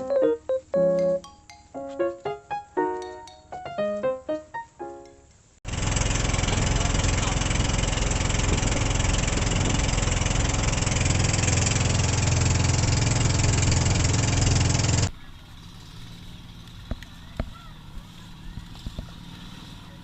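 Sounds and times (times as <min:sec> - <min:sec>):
boat engine running: 0:05.7 - 0:20.0.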